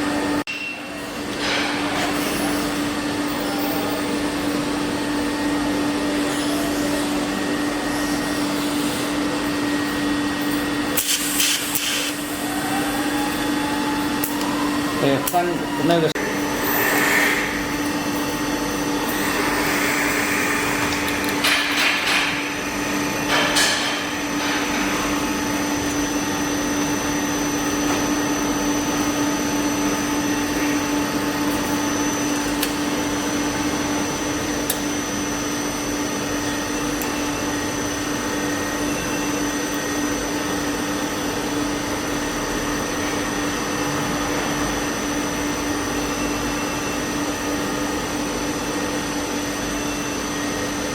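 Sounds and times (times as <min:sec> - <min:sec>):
welding machine drone: 0:00.0 - 0:50.9
short hissing bursts: 0:11.0 - 0:12.2.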